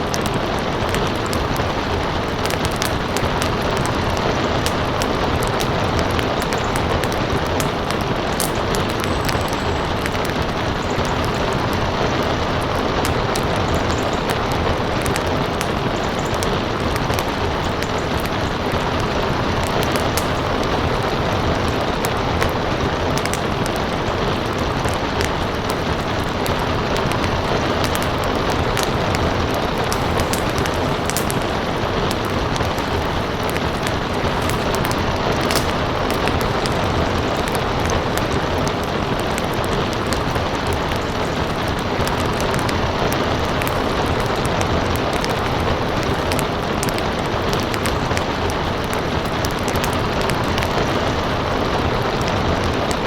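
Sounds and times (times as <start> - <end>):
fire crackling: 0.0 - 53.0
steady rain: 0.0 - 53.0.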